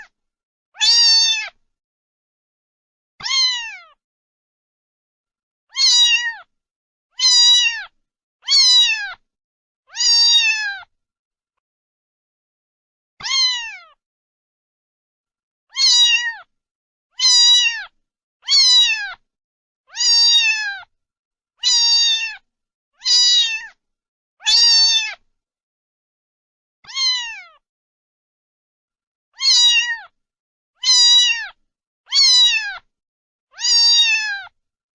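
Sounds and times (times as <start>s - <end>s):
cat meowing: 0.8s - 1.6s, 3.2s - 4.0s, 5.7s - 6.5s, 7.2s - 9.2s, 9.9s - 10.9s, 13.2s - 14.0s, 15.7s - 16.5s, 17.2s - 19.2s, 19.9s - 20.9s, 21.6s - 22.4s, 23.0s - 23.8s, 24.4s - 25.2s, 26.8s - 27.6s, 29.4s - 30.2s, 30.8s - 32.9s, 33.5s - 34.6s.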